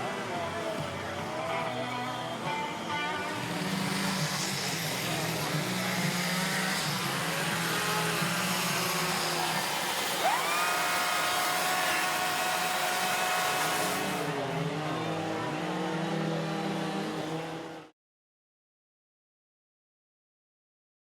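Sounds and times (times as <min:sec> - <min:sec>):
chainsaws idling and cutting: 0:00.0 - 0:17.9
chainsaw revving: 0:03.2 - 0:17.9.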